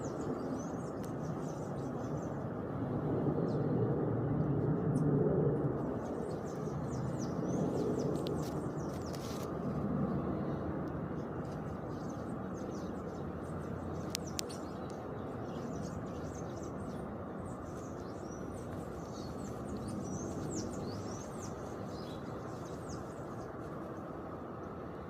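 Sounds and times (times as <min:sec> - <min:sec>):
small birds chirping: 0:00.0 - 0:02.6, 0:05.8 - 0:09.6, 0:11.1 - 0:24.7.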